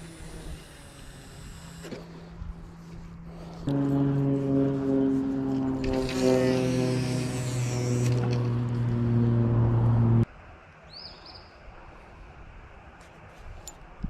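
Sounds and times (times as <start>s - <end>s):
quiet outdoor sounds: 0.0s - 14.0s
low horn-like tone: 3.4s - 10.2s.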